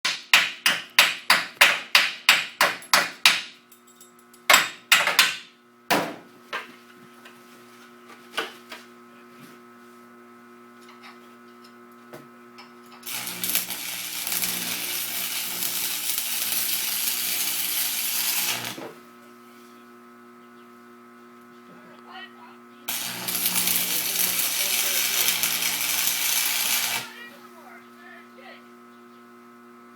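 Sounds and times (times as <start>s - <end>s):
hammer striking steel: 0.0s - 3.6s, 4.5s - 5.5s
faint constant hum: 0.1s - 29.9s
loud steady hiss: 22.9s - 28.2s.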